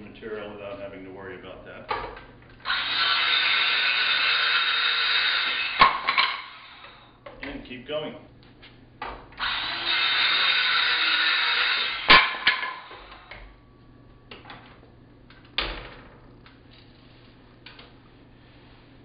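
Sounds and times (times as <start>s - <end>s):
circular saw cutting wood: 2.6s - 7.1s, 9.4s - 13.3s.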